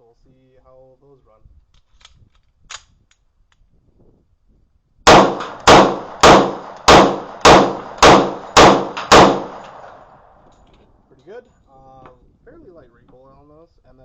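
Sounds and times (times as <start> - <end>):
pistol shots: 5.1 - 10.2.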